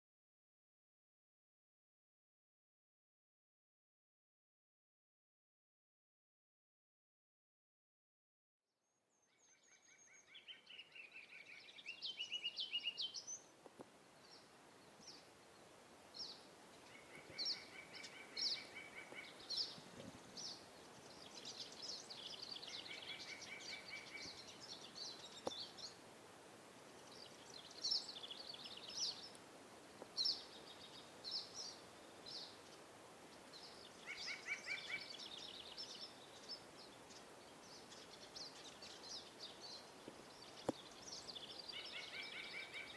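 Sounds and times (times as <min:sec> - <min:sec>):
faint outdoor hiss: 0:08.8 - 0:42.9
songbirds singing and chirping: 0:09.1 - 0:42.9.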